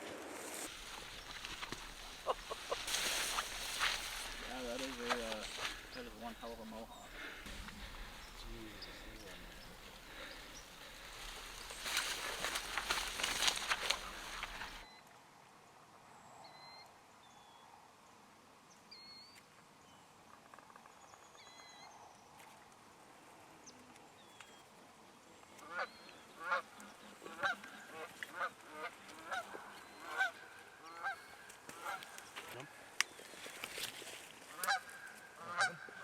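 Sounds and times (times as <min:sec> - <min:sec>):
geese honking: 0:00.8 - 0:14.8, 0:25.6 - 0:32.8, 0:34.5 - 0:36.0.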